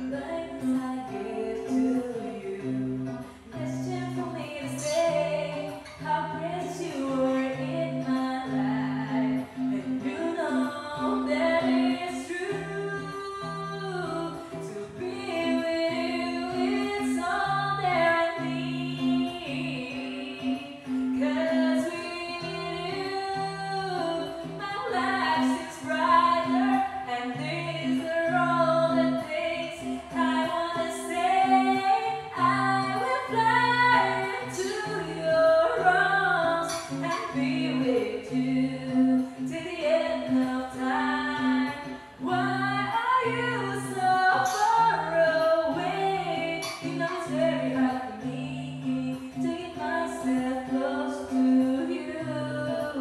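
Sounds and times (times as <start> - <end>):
karaoke backing track: 0.0 - 53.0
woman singing: 0.0 - 53.0.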